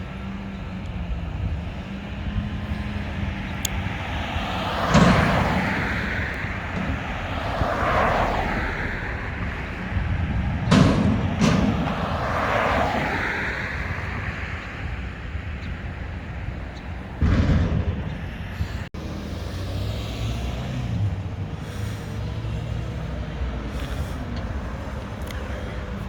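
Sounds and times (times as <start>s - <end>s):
sharp bangs: 3.7s - 15.0s, 17.1s - 18.9s
thump: 4.8s - 8.3s, 10.6s - 13.0s, 17.2s - 18.6s.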